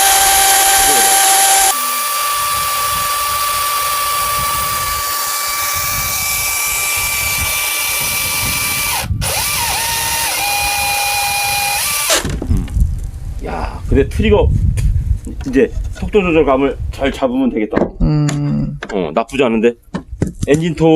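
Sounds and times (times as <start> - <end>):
electric chainsaw cutting log: 0.0 - 12.4.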